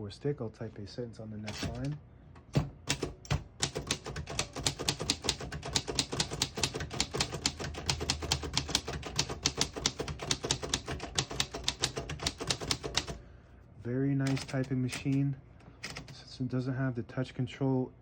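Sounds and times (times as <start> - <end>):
typewriter typing: 2.6 - 13.2, 14.2 - 15.2, 15.8 - 16.2.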